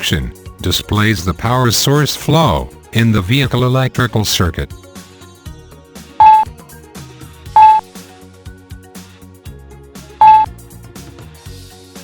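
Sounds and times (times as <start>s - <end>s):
quiet background music: 0.0s - 4.7s
short loud electronic beeps: 6.2s - 6.5s, 7.6s - 7.8s, 10.2s - 10.5s.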